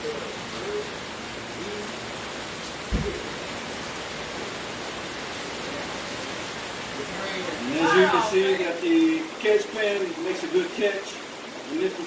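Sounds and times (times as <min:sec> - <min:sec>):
heavy rain hissing: 0:00.0 - 0:12.0
deep thump: 0:02.9 - 0:03.4.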